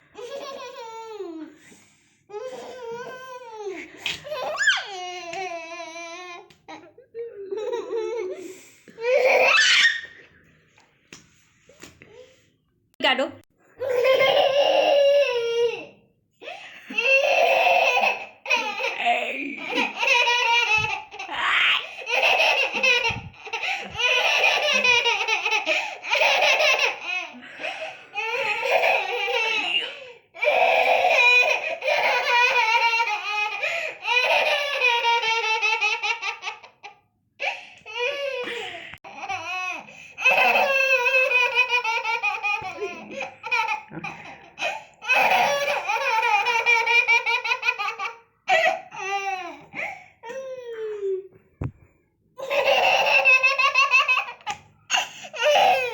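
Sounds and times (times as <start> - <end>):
baby laughing: 16.9 - 50.0, 52.4 - 55.9.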